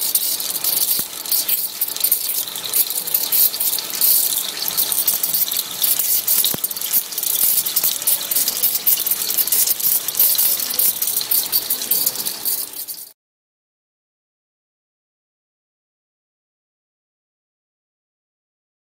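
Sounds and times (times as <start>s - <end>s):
spark discharges crackling: 0.0s - 13.1s.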